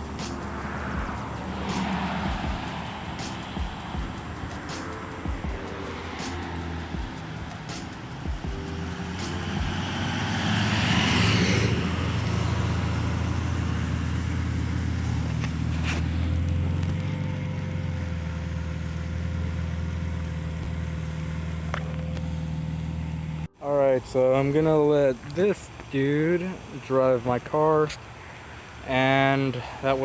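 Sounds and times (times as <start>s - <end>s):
loud car exhaust idling: 0.0s - 23.4s.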